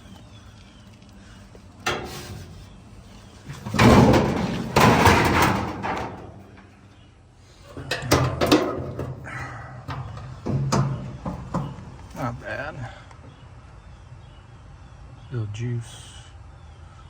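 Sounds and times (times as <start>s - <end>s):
metal scraping rattle: 1.8s - 7.0s, 7.6s - 12.5s
sheet metal panel clunk: 3.5s - 6.9s, 7.7s - 12.4s.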